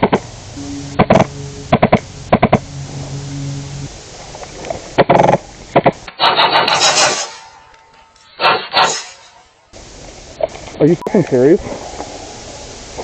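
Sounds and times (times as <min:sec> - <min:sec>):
airsoft gun bursts: 0:05.0 - 0:07.6, 0:08.4 - 0:09.3.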